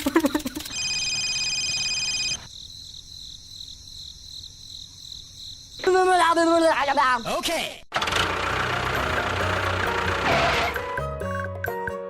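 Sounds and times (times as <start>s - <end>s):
insects chirring: 2.1s - 7.9s.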